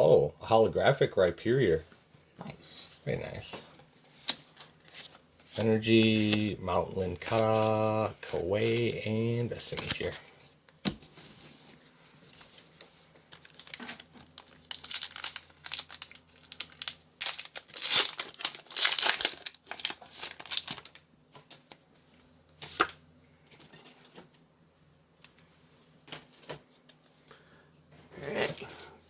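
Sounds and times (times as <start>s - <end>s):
foil wrapper crinkling and tearing: 13.3s - 21.8s.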